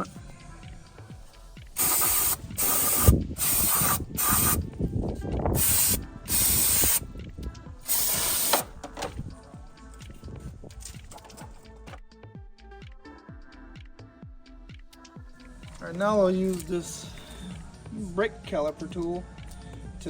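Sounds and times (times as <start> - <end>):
aerosol spray can hissing: 1.8 - 4.6, 5.6 - 7.1, 7.9 - 8.8.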